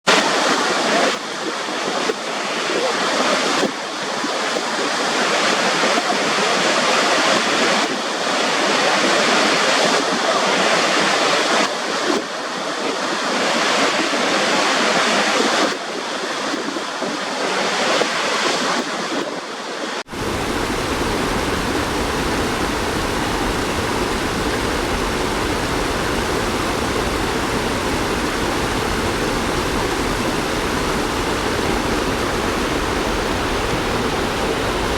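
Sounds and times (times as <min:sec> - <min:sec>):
waterfall rushing: 0:20.1 - 0:34.9.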